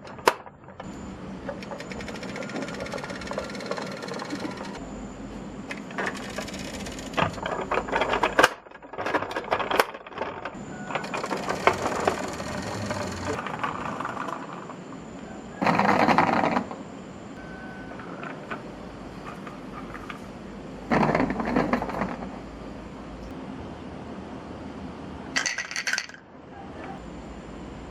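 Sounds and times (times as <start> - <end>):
marbles rattling down wooden run: 1.9 - 4.8, 10.3 - 14.6.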